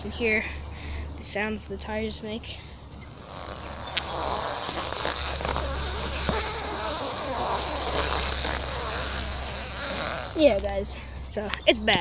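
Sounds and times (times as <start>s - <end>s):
bicycle tires squeaking: 3.0s - 10.6s.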